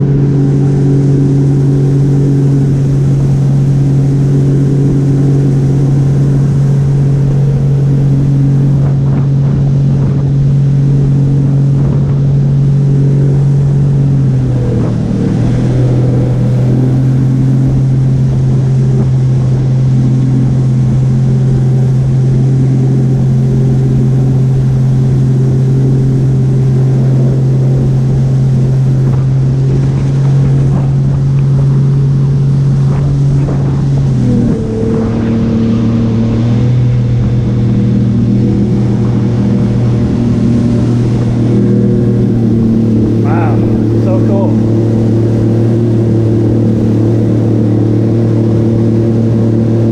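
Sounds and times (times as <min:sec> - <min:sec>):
jet ski engine running: 0:00.0 - 0:49.9.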